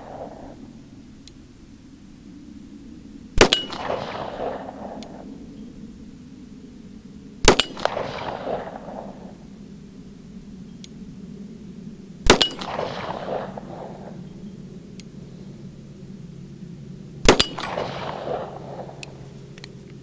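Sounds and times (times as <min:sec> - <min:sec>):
pistol shots: 0:03.4 - 0:05.3, 0:07.4 - 0:09.5, 0:12.2 - 0:14.3, 0:17.2 - 0:19.6.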